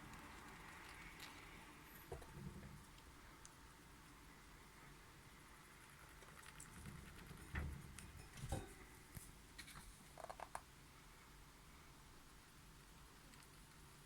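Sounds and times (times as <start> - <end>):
rat scratching in cage: 5.8 - 8.2.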